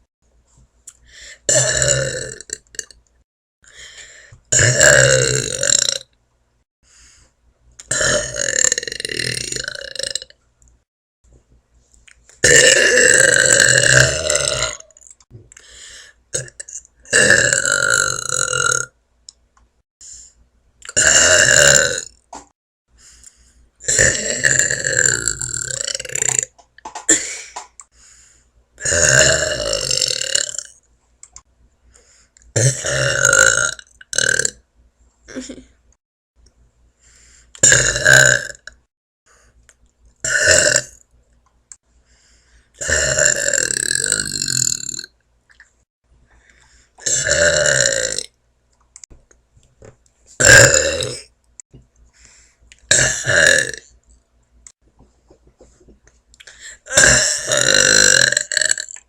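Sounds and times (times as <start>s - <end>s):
loud burps: 1.5s - 3.0s, 4.5s - 6.1s, 7.9s - 10.4s, 12.4s - 15.0s, 16.3s - 19.0s, 20.8s - 22.5s, 23.8s - 27.4s, 28.8s - 30.8s, 32.6s - 34.6s, 37.6s - 38.9s, 40.2s - 41.0s, 42.8s - 45.2s, 47.0s - 48.4s, 50.4s - 51.3s, 52.9s - 53.9s, 56.8s - 59.0s.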